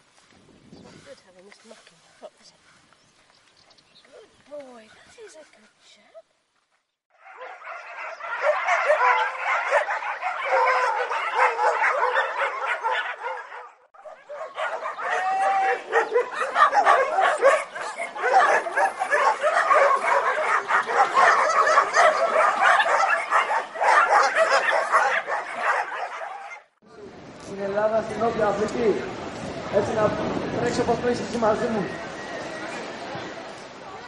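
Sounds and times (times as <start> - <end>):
many dogs barking and yelping: 7.2 - 26.8.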